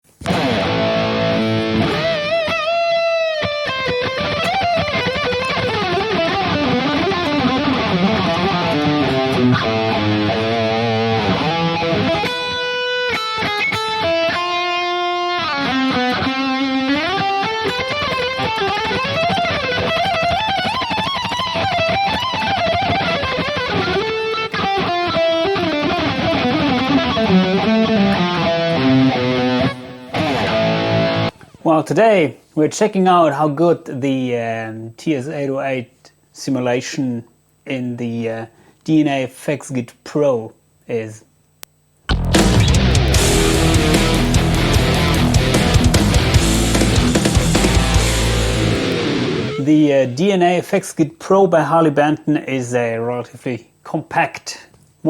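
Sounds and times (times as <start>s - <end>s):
distorted electric guitar solo: 0.2s - 31.6s, 42.1s - 49.8s.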